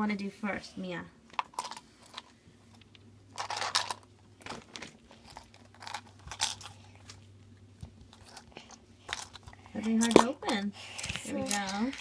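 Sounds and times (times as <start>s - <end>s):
plastic crinkling and crunching: 1.4s - 7.2s.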